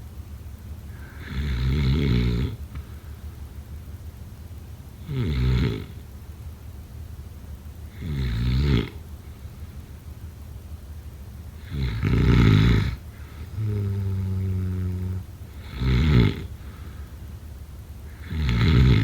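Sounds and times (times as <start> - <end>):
steady low hum: 0.0 - 19.0
person snoring: 0.9 - 2.6, 5.0 - 6.0, 8.0 - 9.0, 11.6 - 16.8, 18.1 - 19.0.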